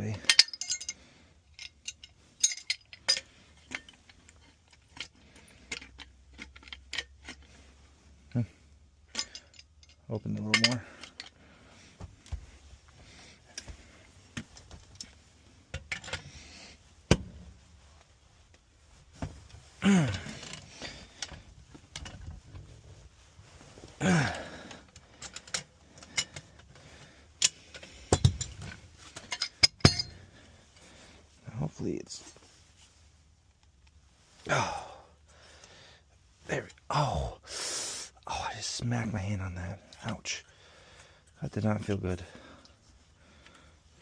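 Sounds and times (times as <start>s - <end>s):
wrenches clinking on pipe fittings: 0.0s - 7.6s, 9.0s - 11.4s, 14.4s - 16.4s, 19.9s - 22.4s, 24.0s - 30.5s.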